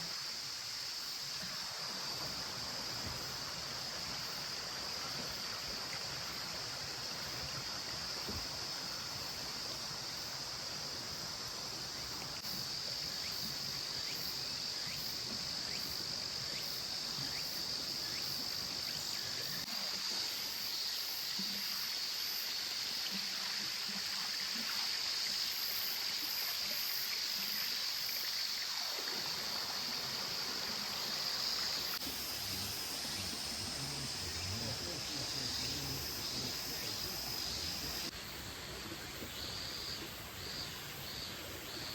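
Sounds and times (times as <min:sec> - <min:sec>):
mountain stream flowing: 0:00.0 - 0:41.9
insects singing: 0:30.8 - 0:38.1.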